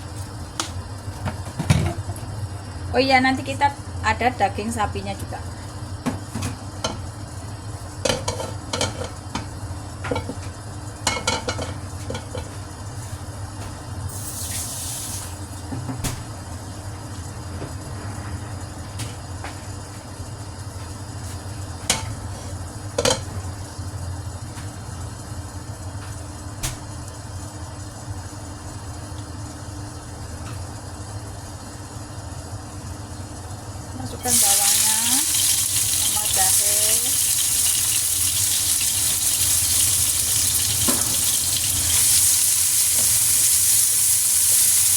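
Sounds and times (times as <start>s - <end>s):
stove hum: 0.0s - 44.9s
oil sizzling in a pan: 14.1s - 15.5s, 34.2s - 44.9s.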